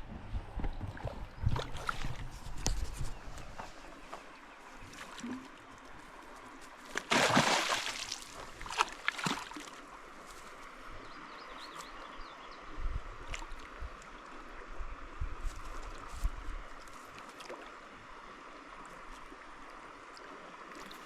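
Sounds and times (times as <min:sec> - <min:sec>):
water sloshing and gurgling: 0:00.0 - 0:03.7, 0:04.6 - 0:10.3
loud water splash: 0:07.1 - 0:09.6.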